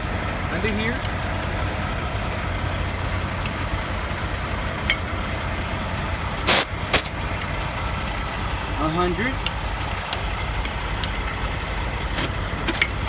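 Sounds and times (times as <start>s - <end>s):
truck engine idling: 0.0s - 13.0s
air hissing from tire valve: 6.4s - 7.2s, 12.1s - 13.0s.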